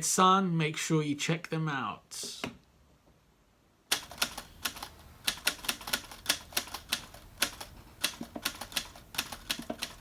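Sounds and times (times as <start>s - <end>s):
keyboard typing clicks: 3.9s - 10.0s.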